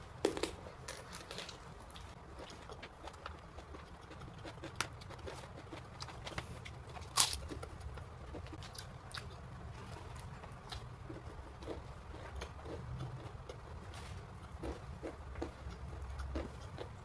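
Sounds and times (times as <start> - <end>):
crunchy bite of fried food: 7.0 - 7.5.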